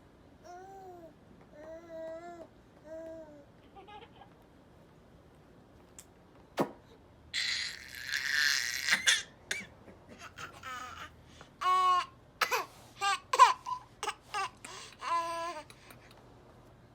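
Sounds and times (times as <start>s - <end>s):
baby coughing squealing and laughing: 7.4s - 11.0s, 11.6s - 14.5s.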